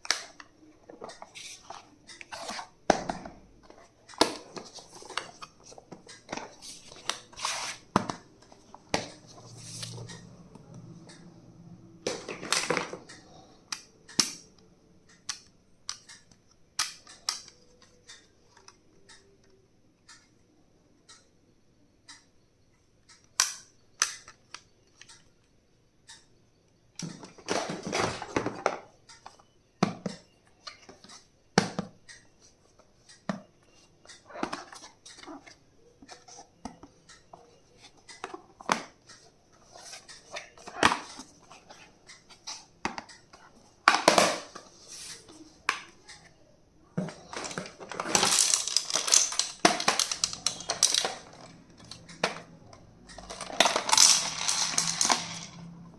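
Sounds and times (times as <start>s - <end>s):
plastic items clicking and tapping: 0.0s - 10.3s, 12.0s - 14.5s, 27.0s - 32.3s, 33.0s - 55.8s.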